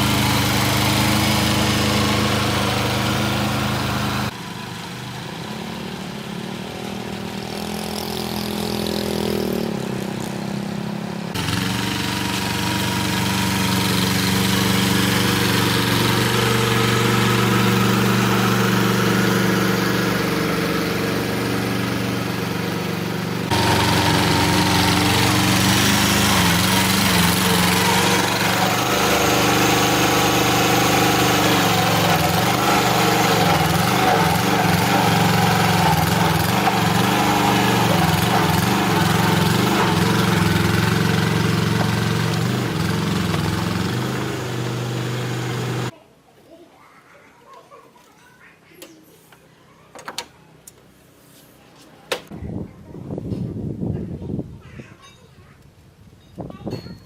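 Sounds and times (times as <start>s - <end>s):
engine running: 0.0s - 45.9s.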